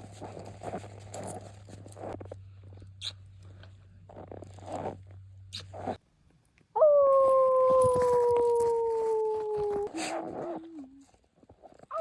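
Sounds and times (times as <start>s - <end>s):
crunching footsteps: 0.0s - 6.0s, 7.3s - 12.0s
long howl sliding down: 6.8s - 10.9s.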